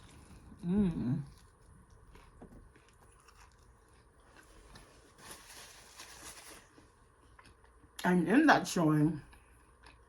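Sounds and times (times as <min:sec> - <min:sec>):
faint chewing: 0:00.0 - 0:08.0, 0:09.2 - 0:10.0
soft rustle: 0:04.3 - 0:07.0.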